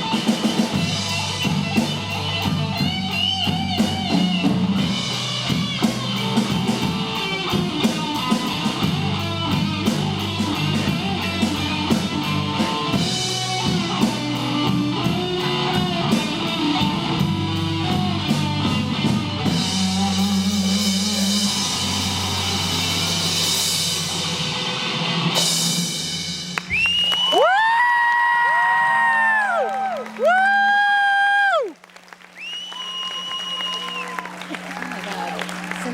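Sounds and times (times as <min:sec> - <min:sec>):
live rock band playing: 0:00.0 - 0:27.6.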